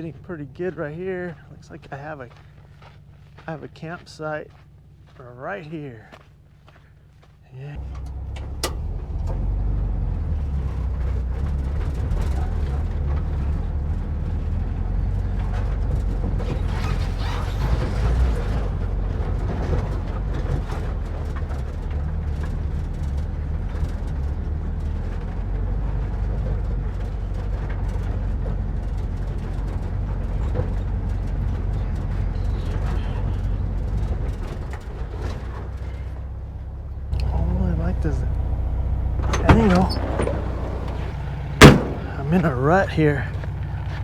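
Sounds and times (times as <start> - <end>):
van engine running at low revs: 0.0 - 44.0
vehicle body knocks and rattles: 39.1 - 44.0.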